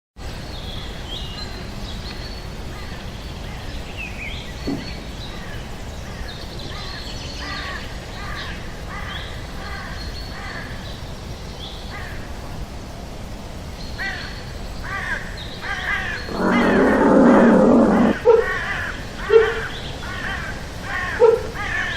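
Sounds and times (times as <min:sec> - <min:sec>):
background hiss: 0:00.2 - 0:21.9
harsh bird caws: 0:14.0 - 0:21.9
birds chirping and whistling: 0:16.2 - 0:18.2.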